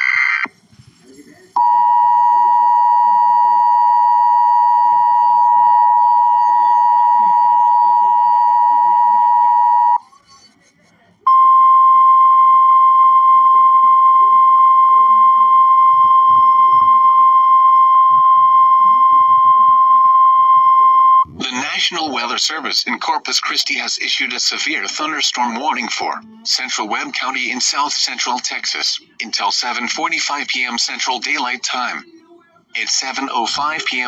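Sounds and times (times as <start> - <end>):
steady alarm tone: 1.6 - 10.0, 11.3 - 21.3
two-tone electronic alarm: 1.6 - 10.0, 11.3 - 21.3.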